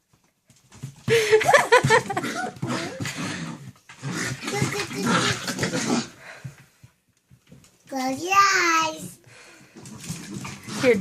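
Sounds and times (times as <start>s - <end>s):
puppies vocalising while play-fighting: 2.1s - 6.4s.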